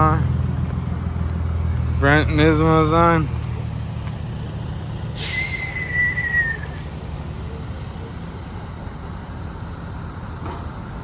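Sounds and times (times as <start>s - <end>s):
low rumble of road traffic: 0.0s - 11.0s
high squeal falling in pitch: 5.2s - 6.8s.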